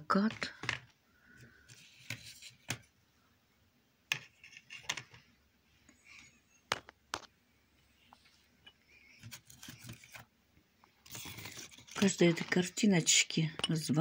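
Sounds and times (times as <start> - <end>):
cardboard paintings clicking and tapping: 0.2 - 2.9, 4.1 - 5.3, 6.7 - 7.3.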